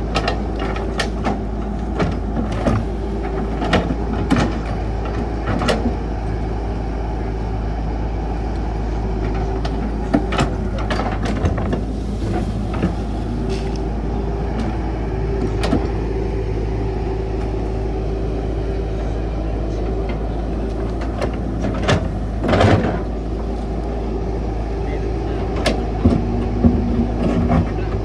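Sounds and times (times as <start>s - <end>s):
excavator digging: 0.0s - 28.0s
machine clanks and knocks: 0.1s - 6.0s, 9.2s - 13.8s, 19.8s - 23.1s, 25.3s - 28.0s.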